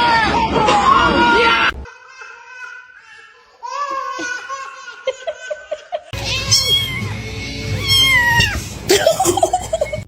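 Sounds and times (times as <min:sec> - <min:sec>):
cat meowing: 0:06.2 - 0:08.6
music: 0:06.2 - 0:10.0.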